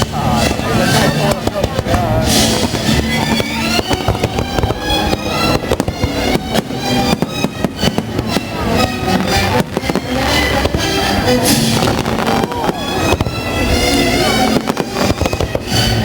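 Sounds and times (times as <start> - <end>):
fireworks bangs and crackles: 0.0 - 16.0
music playing: 0.0 - 16.0.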